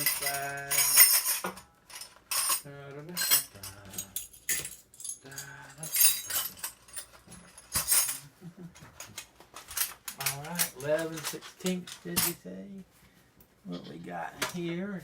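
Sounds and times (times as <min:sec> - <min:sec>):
metal wrenches clinking: 0:00.0 - 0:08.3, 0:08.9 - 0:12.4.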